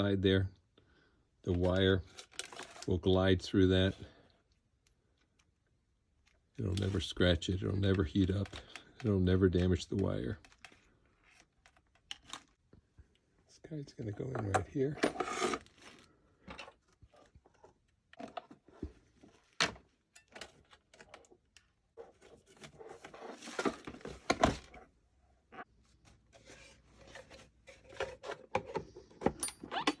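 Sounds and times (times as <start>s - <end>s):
scraping and rustling: 21.9s - 24.9s, 25.5s - 29.1s.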